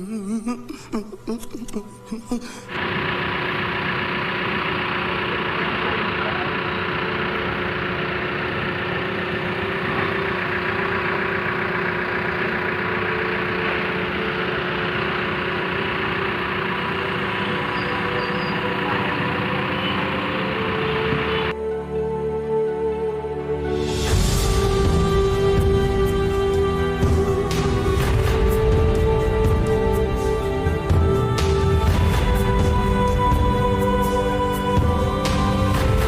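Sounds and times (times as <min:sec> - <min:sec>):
diesel engine running: 0:02.6 - 0:21.6, 0:23.7 - 0:36.0
steady tones: 0:02.6 - 0:21.6.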